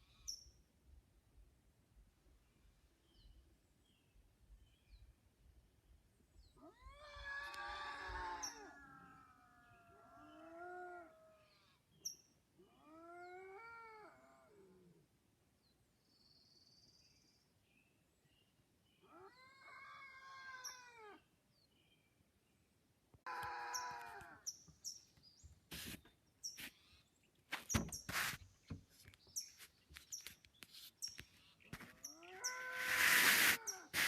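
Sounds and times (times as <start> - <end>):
animal wavering yowl: 6.8 - 11.7, 32.2 - 34.0.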